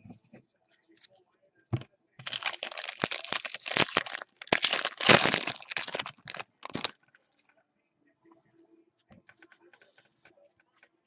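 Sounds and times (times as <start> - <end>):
plastic wrapper tearing and crinkling: 2.2 - 6.9.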